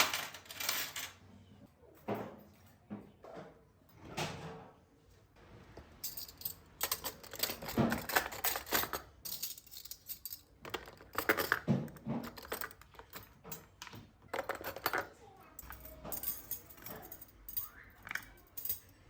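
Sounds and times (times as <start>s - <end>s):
tableware clinking: 6.1s - 19.0s.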